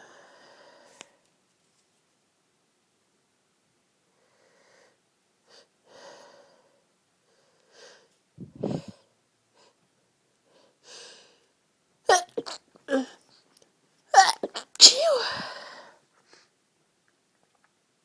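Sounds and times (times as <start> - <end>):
stifled sneeze: 12.1 - 13.2, 14.2 - 15.4.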